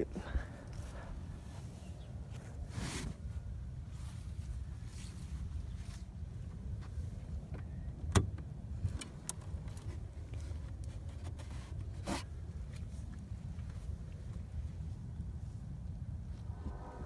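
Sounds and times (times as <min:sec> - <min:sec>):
steady low rumble: 0:12.5 - 0:17.0.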